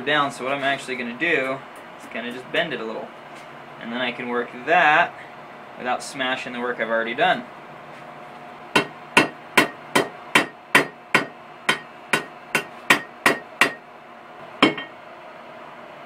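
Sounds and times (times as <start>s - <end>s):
hammer tapping wire on anvil: 8.8s - 13.8s, 14.6s - 14.9s.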